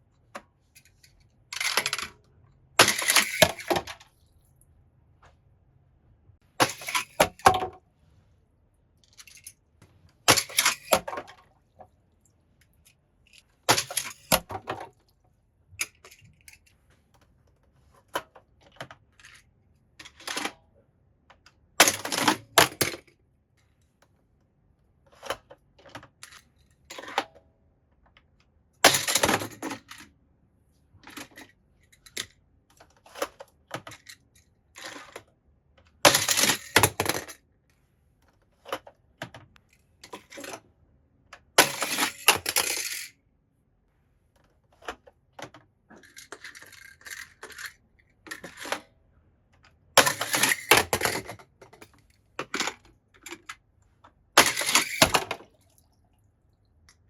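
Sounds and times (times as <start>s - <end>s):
toy cars clattering and clicking: 0.3s - 4.3s, 6.6s - 7.8s, 9.0s - 11.5s, 12.6s - 15.0s, 15.7s - 20.7s, 21.3s - 23.1s, 25.1s - 27.4s, 28.8s - 30.2s, 31.0s - 37.4s, 38.2s - 40.7s, 41.3s - 43.2s, 44.4s - 55.6s.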